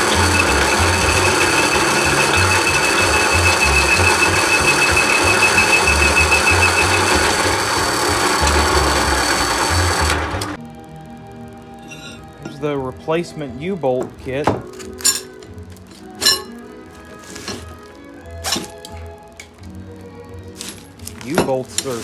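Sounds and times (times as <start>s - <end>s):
electric drill boring through metal: 0.0s - 10.6s.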